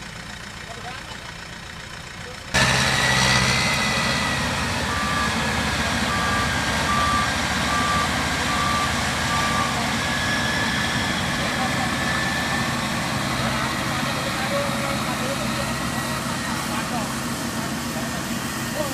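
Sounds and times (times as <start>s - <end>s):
combine harvester running: 0.0s - 18.9s
machinery whine: 2.6s - 18.9s
reversing alarm beeps: 4.2s - 13.6s.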